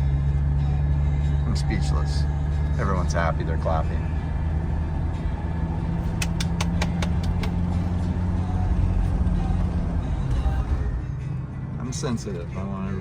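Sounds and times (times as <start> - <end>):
diesel engine drone in cabin: 0.0 - 13.0.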